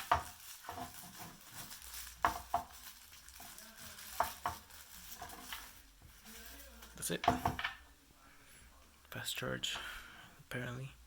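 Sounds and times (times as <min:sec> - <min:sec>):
packaging crinkling and rustling: 0:00.0 - 0:07.7.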